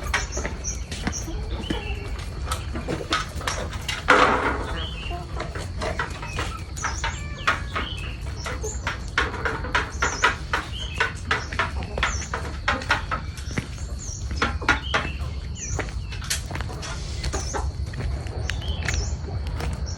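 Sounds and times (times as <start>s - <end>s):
small birds chirping: 0.0s - 19.9s
steady low rumble: 9.8s - 19.9s.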